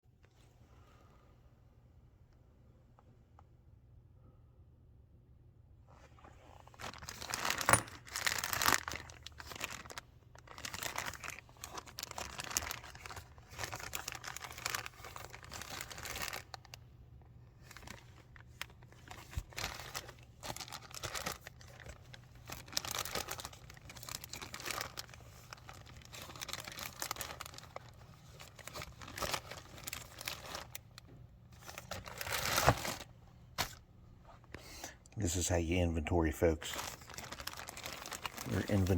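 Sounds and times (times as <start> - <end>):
plastic bags rustling: 6.6 - 16.7, 17.6 - 34.6, 36.6 - 38.9.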